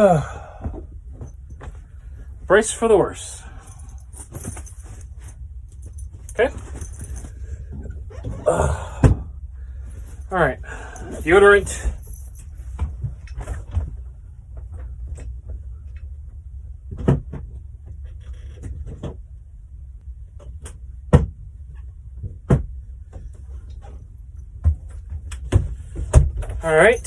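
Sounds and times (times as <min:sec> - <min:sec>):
steady low rumble: 0:00.0 - 0:18.0, 0:19.2 - 0:27.0
small items being handled: 0:03.6 - 0:07.6.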